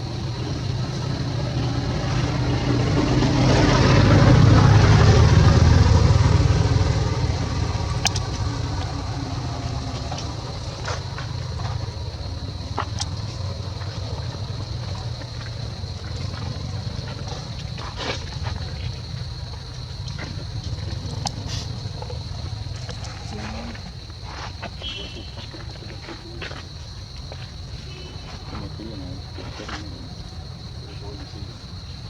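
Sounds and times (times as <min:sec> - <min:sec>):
vehicle engine rumbling past: 0:00.0 - 0:24.1.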